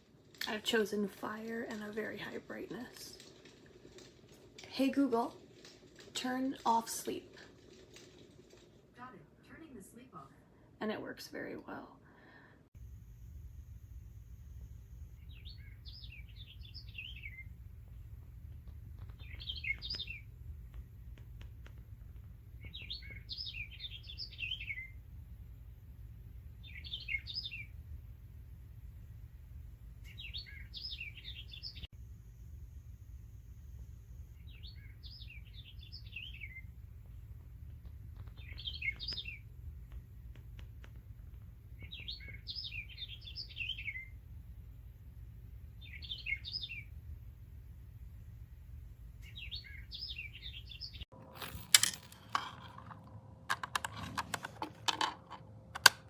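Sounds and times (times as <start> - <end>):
steady low hum: 12.0 - 30.4, 31.0 - 56.0
songbird chirping: 14.9 - 21.8, 22.5 - 25.0, 26.4 - 27.8, 30.0 - 31.9, 34.2 - 47.0, 47.8 - 53.1.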